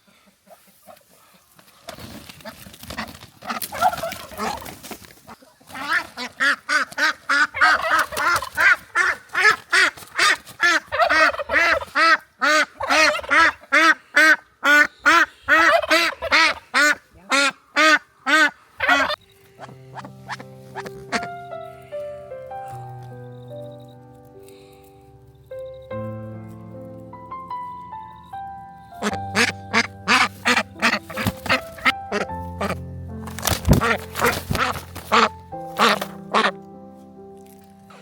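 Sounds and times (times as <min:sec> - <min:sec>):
scuffling: 0:00.6 - 0:12.0, 0:18.8 - 0:23.2, 0:30.1 - 0:38.0
geese honking: 0:02.4 - 0:21.4, 0:28.9 - 0:32.8, 0:33.5 - 0:36.7
music: 0:19.1 - 0:38.0.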